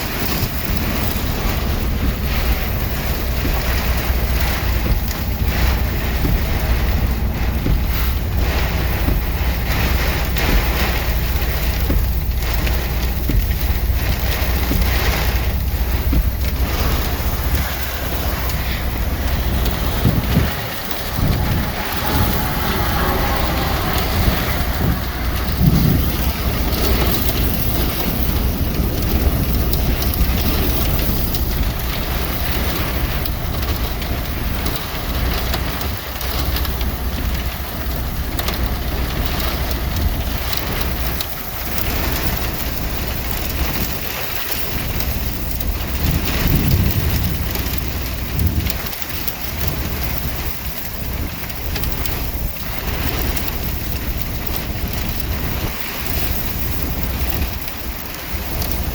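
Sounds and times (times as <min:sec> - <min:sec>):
heavy rain and wind: 0:00.0 - 0:58.9
low rumble: 0:00.5 - 0:42.0.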